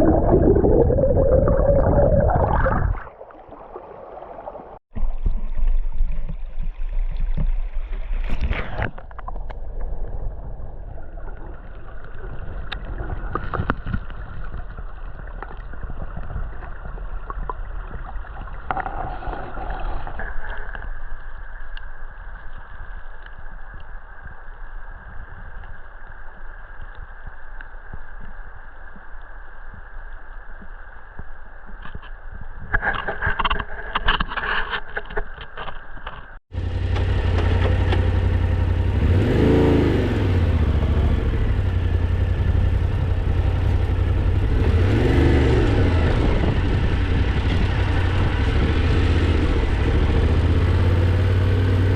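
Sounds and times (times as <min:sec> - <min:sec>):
motorcycle engine running: 0:36.5 - 0:51.9.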